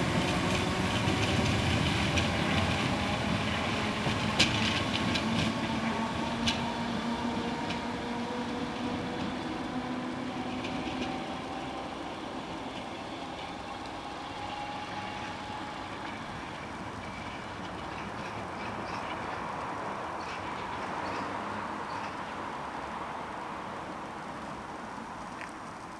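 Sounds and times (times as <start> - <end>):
train traction motors whining: 0.0 - 20.8
wheels clicking over rail: 0.1 - 8.0.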